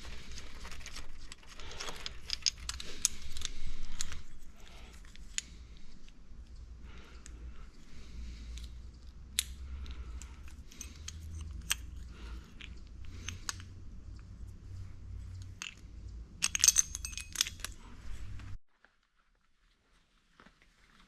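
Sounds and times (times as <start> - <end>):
steady low hum: 0.0 - 18.6
metallic clicks of tools: 1.3 - 6.6, 8.5 - 14.3, 15.3 - 17.9.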